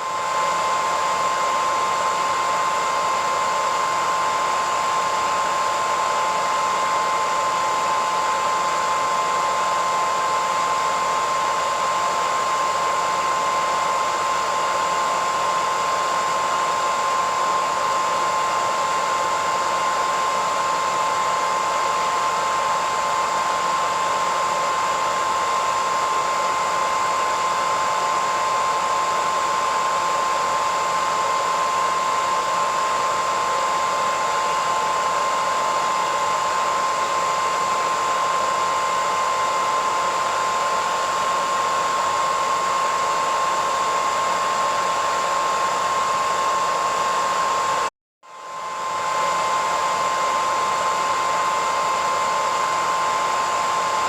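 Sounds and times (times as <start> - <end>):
hair dryer running: 0.0 - 54.0.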